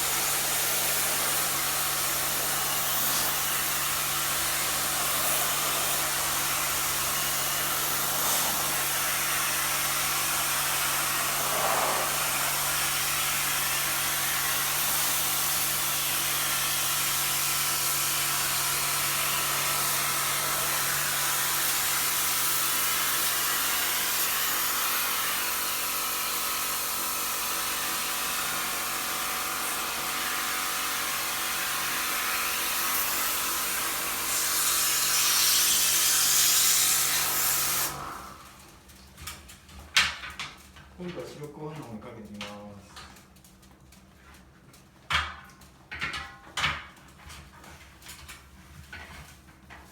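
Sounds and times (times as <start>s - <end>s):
water jet hissing: 0.0s - 15.8s
pressure washer motor humming: 0.0s - 38.2s.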